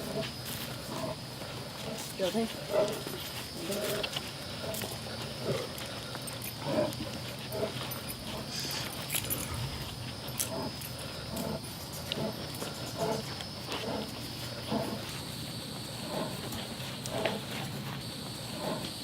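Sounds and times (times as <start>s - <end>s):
big cat grunting: 0.0s - 15.1s, 15.8s - 19.0s.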